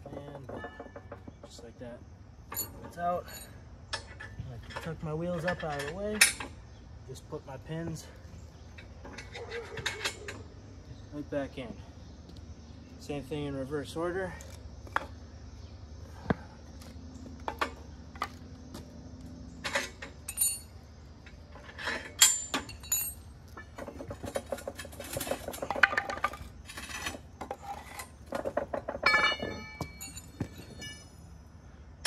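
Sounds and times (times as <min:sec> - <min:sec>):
metal parts clinking and knocking: 0:02.5 - 0:06.6, 0:08.7 - 0:10.5, 0:19.6 - 0:31.2.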